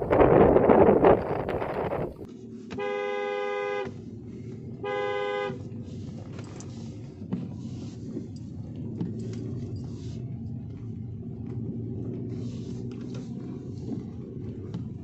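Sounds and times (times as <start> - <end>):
strong wind buffeting microphone: 0.0 - 2.3
low engine rumble: 0.0 - 15.0
car horn beeping: 2.8 - 4.0, 4.8 - 5.6.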